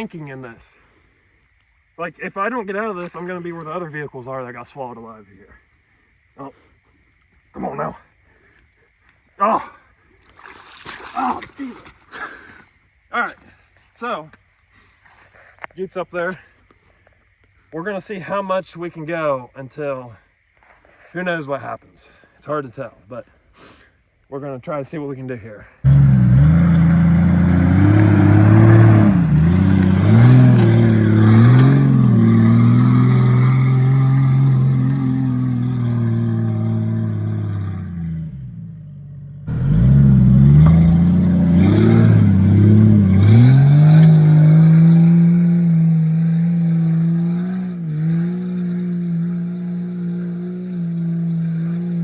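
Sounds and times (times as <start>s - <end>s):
engine revving under load: 25.9s - 52.0s.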